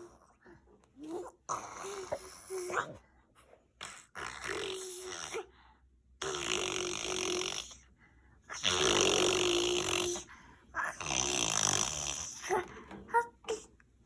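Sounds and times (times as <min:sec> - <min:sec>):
baby making raspy breathy noises: 0:08.5 - 0:13.7.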